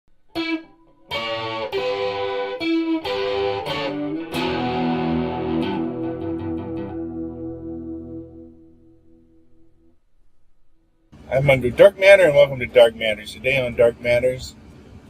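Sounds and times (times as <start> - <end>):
guitar notes and chords: 0.2 - 10.0.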